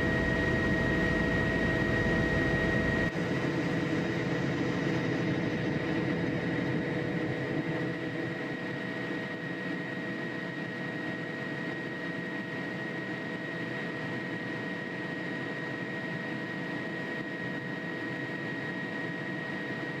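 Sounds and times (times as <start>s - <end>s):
jet engines running: 0.0s - 9.1s.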